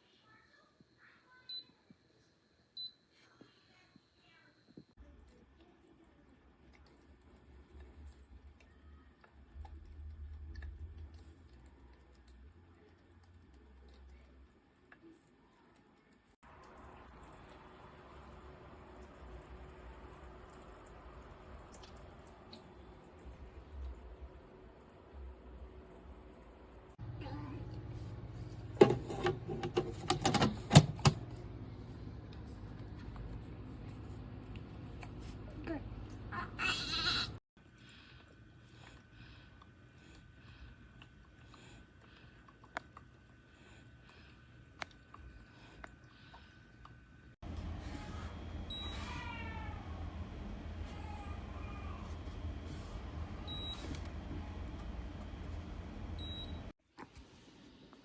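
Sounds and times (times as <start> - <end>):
steady low hum: 37.6 - 56.7.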